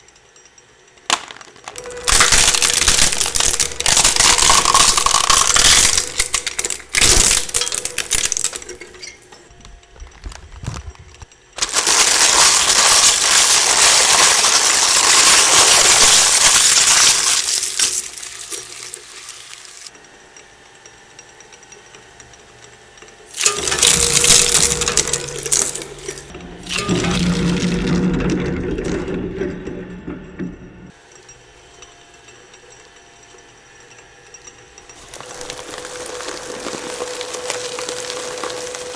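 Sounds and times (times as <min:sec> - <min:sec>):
low machine hum: 0:01.0 - 0:19.1, 0:23.3 - 0:33.8
shredder crunching bubble wrap: 0:01.1 - 0:19.9, 0:23.3 - 0:28.4, 0:34.9 - 0:38.9.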